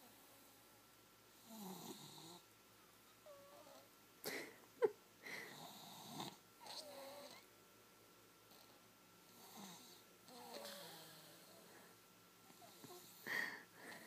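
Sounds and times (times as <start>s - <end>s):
child snoring: 1.4s - 2.4s, 5.4s - 7.5s, 9.4s - 11.7s.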